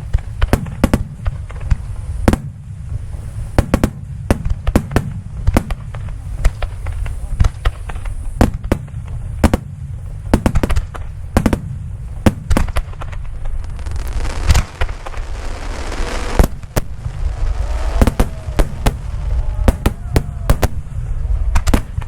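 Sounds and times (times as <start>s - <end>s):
hissing crackle: 0.0s - 22.0s
fireworks shells bursting: 10.4s - 22.0s
low rumble: 13.2s - 22.0s.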